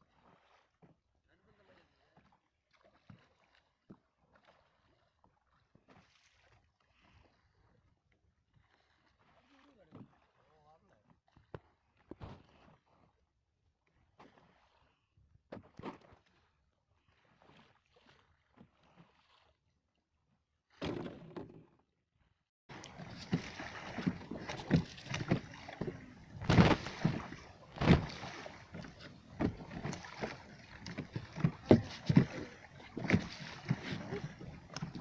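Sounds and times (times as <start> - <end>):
water slapping against boat hull: 22.7 - 35.0.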